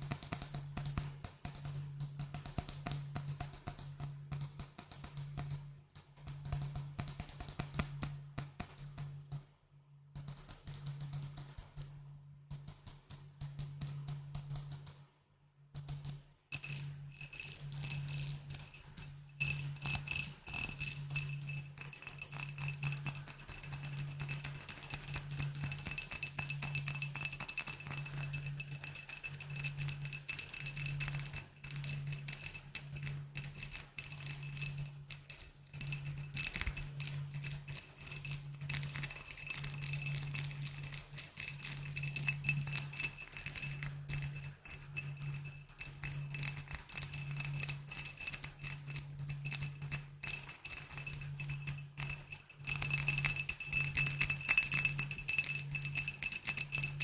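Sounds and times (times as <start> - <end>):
tapping on glass bottles: 15.8 - 57.0.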